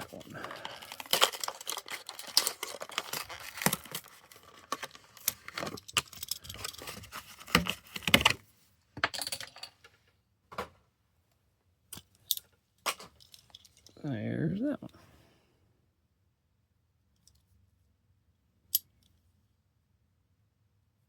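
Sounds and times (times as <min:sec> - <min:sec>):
plastic packaging clicks and rattles: 0:00.1 - 0:08.4.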